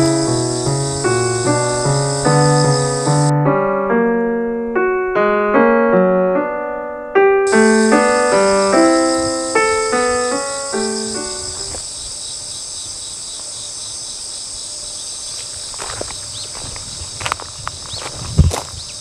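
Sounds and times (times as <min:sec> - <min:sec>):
insects chirring: 0:00.0 - 0:03.3, 0:07.5 - 0:19.0
piano melody: 0:00.0 - 0:11.8.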